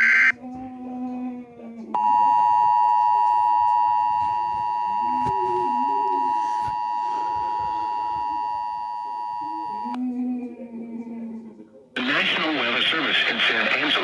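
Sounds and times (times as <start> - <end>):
two-tone electronic alarm: 0.0 - 0.4, 2.0 - 10.0.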